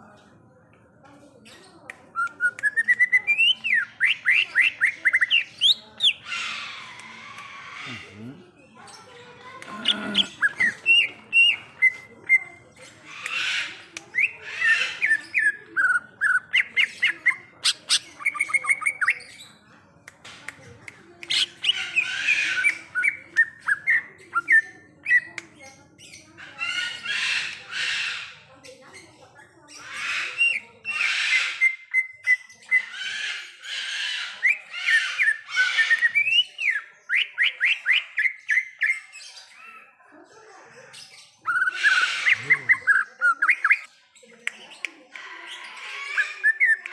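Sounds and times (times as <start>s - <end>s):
bird singing harsh and whistled notes: 2.2s - 8.0s, 30.0s - 39.8s, 41.1s - 43.9s.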